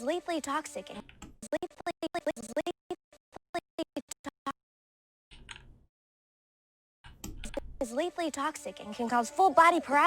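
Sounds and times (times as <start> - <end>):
stuttering voice fragments: 0.4 - 4.6.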